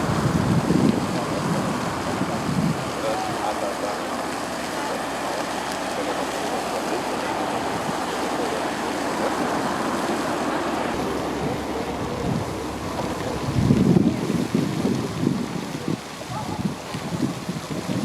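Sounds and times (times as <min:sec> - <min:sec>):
steady rushing noise: 0:00.0 - 0:18.0
wind rumble on microphone: 0:00.0 - 0:18.0.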